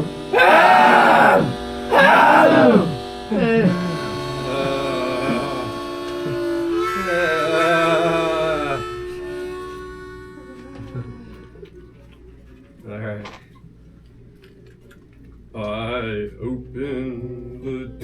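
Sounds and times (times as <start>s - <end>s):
group of voices wailing: 0.0s - 9.2s
leader's voice: 0.3s - 5.9s.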